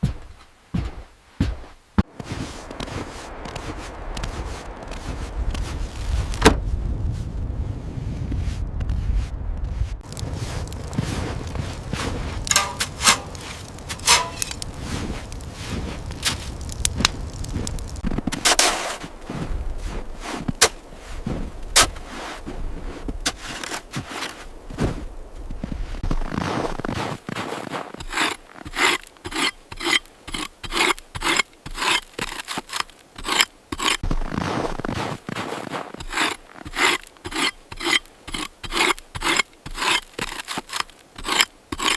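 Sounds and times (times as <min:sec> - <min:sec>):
rasping scraping strokes: 0:10.4 - 0:16.8, 0:17.7 - 0:21.2, 0:26.8 - 0:34.0, 0:34.7 - 0:41.9
sharp impacts: 0:12.5 - 0:14.8.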